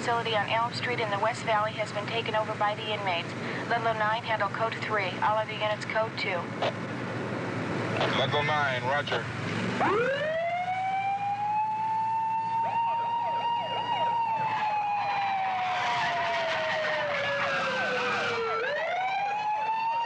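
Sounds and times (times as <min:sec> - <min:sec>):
low engine hum: 0:00.0 - 0:19.5
police siren wailing: 0:09.6 - 0:20.0
siren yelps: 0:09.8 - 0:20.0.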